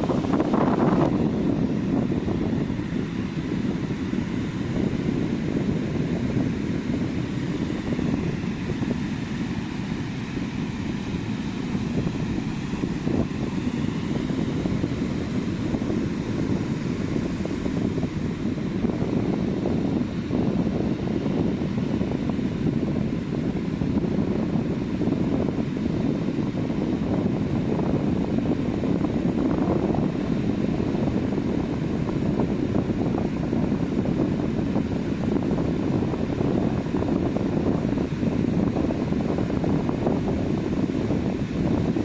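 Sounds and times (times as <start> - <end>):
sea surf on a beach: 0.0 - 42.0
wind rumbling on microphone: 0.0 - 42.0.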